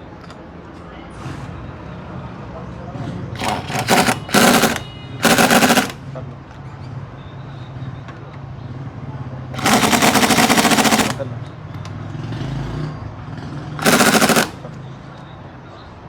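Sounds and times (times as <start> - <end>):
impact wrench rattling: 3.4 - 6.0, 9.6 - 11.2, 13.8 - 14.6.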